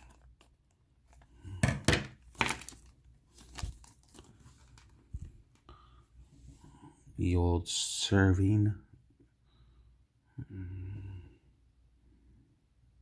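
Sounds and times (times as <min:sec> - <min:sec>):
plastic packaging crinkling and tearing: 0:00.0 - 0:01.4, 0:02.1 - 0:05.3.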